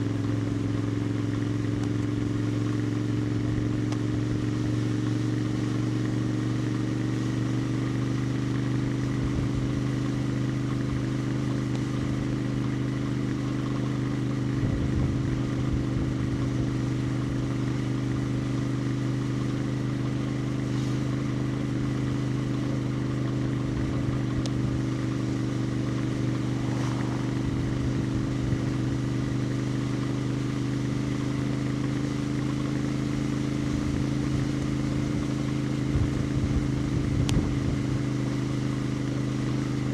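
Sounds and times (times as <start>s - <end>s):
motorcycle engine cruising: 0.0s - 39.9s
brief low rumbles: 24.7s - 30.4s.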